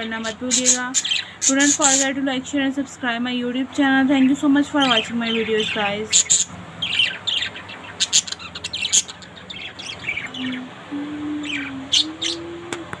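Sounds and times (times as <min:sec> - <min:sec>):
budgerigars chirping and squawking: 0:00.0 - 0:02.2, 0:04.1 - 0:10.7, 0:11.4 - 0:12.5
low wavering steady tone: 0:10.3 - 0:12.9.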